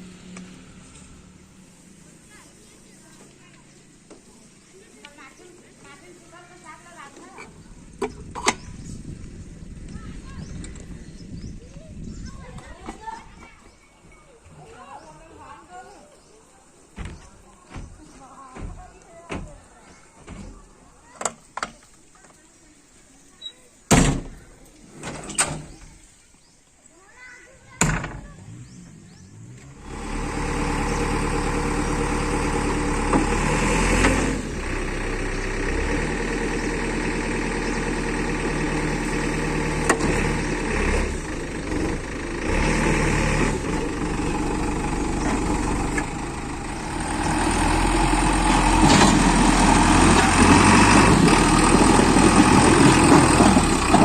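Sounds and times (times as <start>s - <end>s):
diesel engine starting and running: 0.0s - 2.9s, 27.8s - 54.0s.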